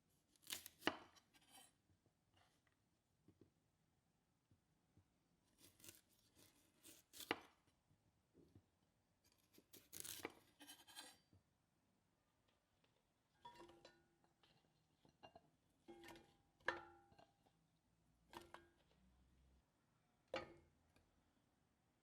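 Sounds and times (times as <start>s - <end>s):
knife cutting food: 0.4s - 1.7s, 5.6s - 7.6s, 9.3s - 11.2s.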